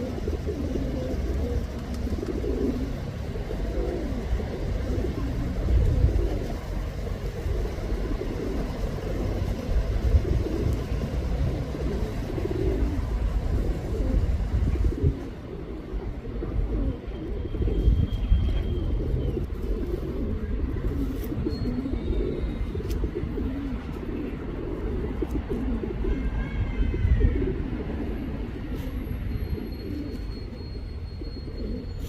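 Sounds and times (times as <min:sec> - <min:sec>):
pigeon cooing: 0:00.0 - 0:32.0
steady low rumble: 0:02.8 - 0:19.3.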